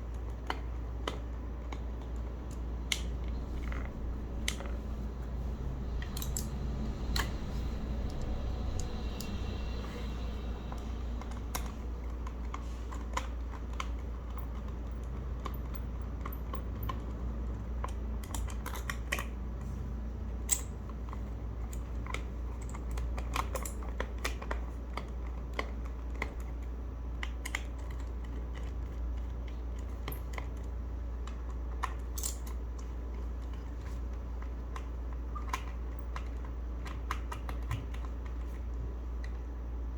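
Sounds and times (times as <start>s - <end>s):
low hum: 2.1s - 14.4s.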